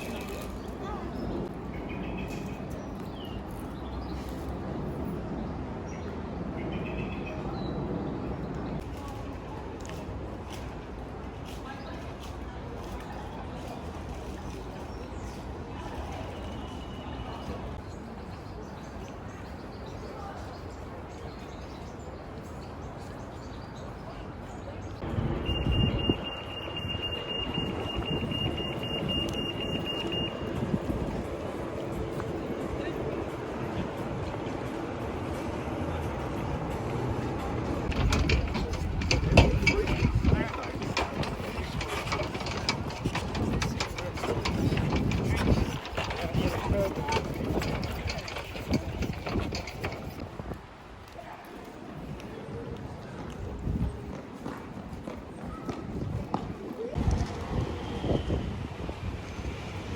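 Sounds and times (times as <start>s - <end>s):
outdoor background noise: 0.0s - 59.9s
bump: 37.9s - 50.2s.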